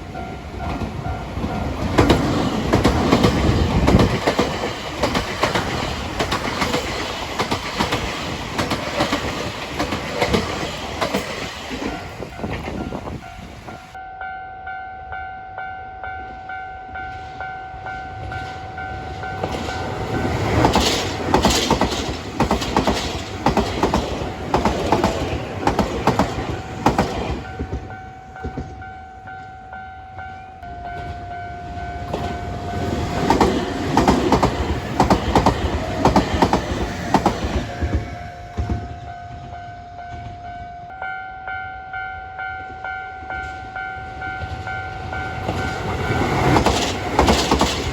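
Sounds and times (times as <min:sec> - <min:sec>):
train wheels clattering over rail joints: 0:00.5 - 0:13.2, 0:19.4 - 0:28.8, 0:32.1 - 0:39.0, 0:44.5 - 0:47.9.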